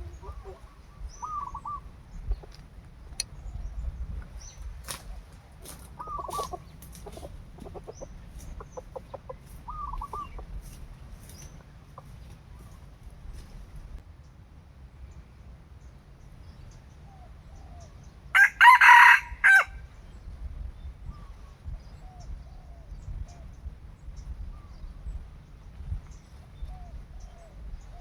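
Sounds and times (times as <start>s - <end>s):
rooster calling and clucking: 0.0s - 3.3s, 5.6s - 10.8s, 18.4s - 19.8s.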